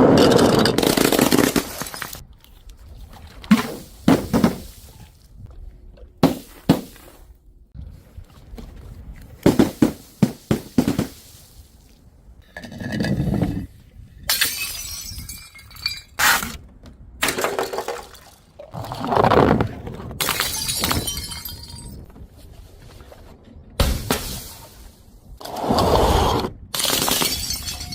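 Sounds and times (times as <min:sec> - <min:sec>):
glass bottles shattering: 0:14.3 - 0:16.3, 0:20.2 - 0:22.0, 0:26.8 - 0:27.9
glass shards tinkling: 0:14.4 - 0:16.2, 0:20.5 - 0:22.0, 0:27.1 - 0:27.9.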